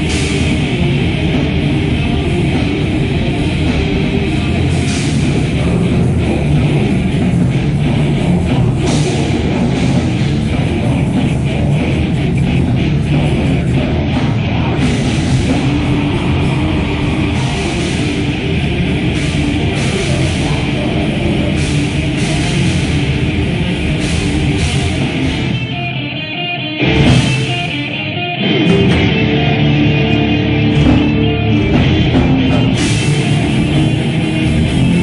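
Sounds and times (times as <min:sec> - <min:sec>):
heavy metal band playing live: 0:00.0 - 0:35.0.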